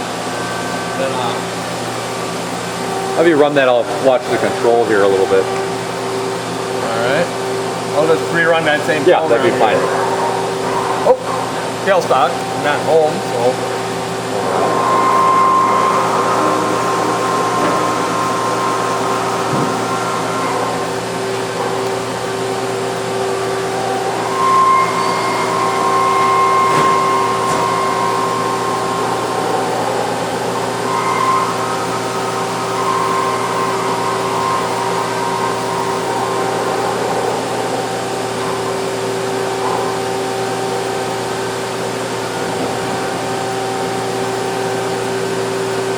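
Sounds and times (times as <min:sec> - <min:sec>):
high machine whine: 0:00.0 - 0:45.9
lathe machine hum: 0:00.0 - 0:45.9.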